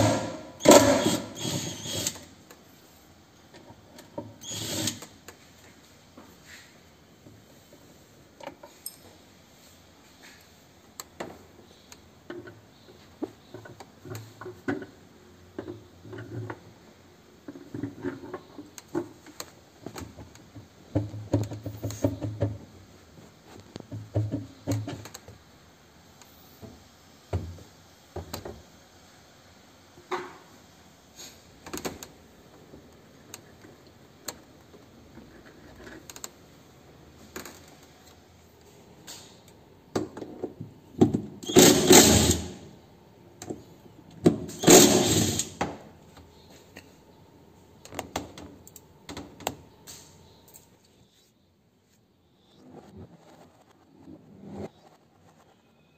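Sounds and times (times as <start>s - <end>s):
knocks clicks and rattles of parts: 17.4s - 22.7s, 23.5s - 25.4s, 43.4s - 46.9s.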